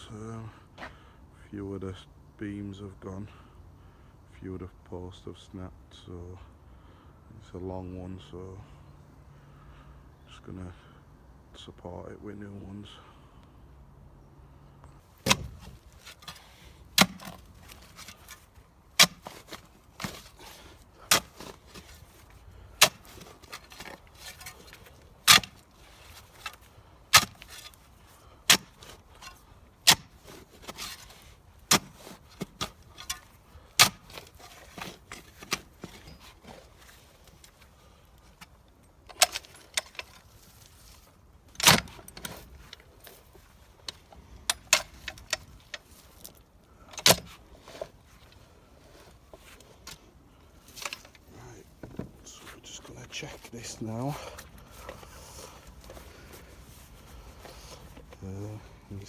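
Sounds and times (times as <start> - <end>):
loud impacts on fence posts: 15.1 - 37.6, 41.5 - 46.3.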